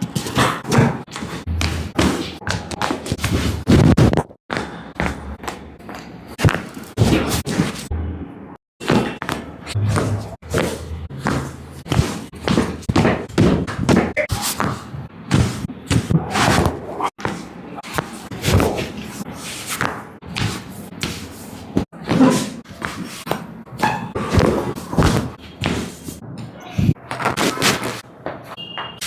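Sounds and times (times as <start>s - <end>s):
hands thumping and slapping body: 8.8s - 18.9s, 24.3s - 25.9s.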